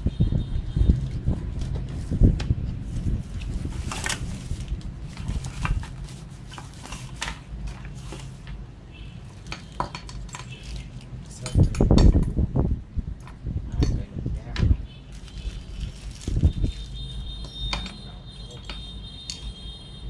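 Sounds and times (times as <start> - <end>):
metal parts clinking: 9.4 - 12.3, 16.6 - 19.6.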